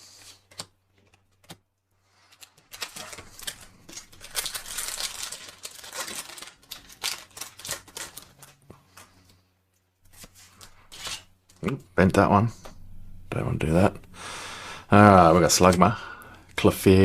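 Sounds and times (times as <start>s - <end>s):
cards rustling: 0.0s - 9.4s
foil wrapper crinkling and tearing: 2.2s - 9.1s.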